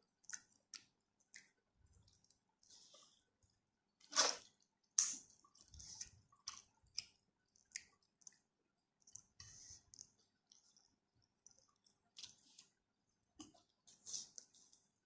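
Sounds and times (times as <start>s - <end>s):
wet chewing and mouth smacks: 0.1s - 3.2s, 4.1s - 12.8s.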